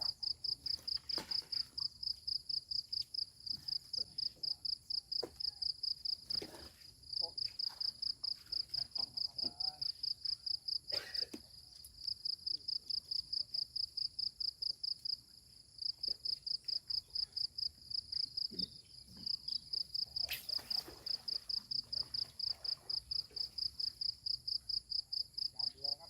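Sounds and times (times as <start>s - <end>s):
insect chirping: 0.0s - 6.4s, 11.7s - 26.0s.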